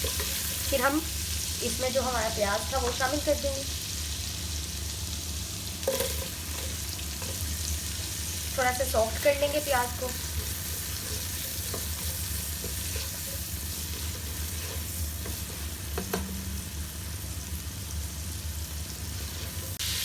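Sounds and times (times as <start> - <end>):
spoon stirring against pan: 0.0 - 0.9, 5.8 - 16.5
steady low hum: 0.0 - 19.8
onions sizzling in a pan: 0.0 - 20.0.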